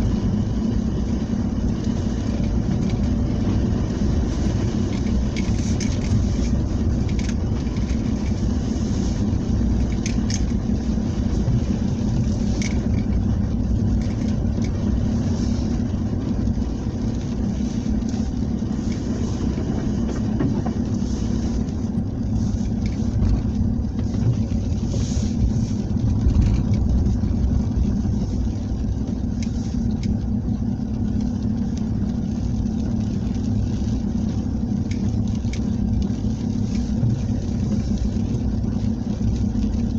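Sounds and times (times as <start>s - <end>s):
vehicle engine running: 0.0s - 39.9s.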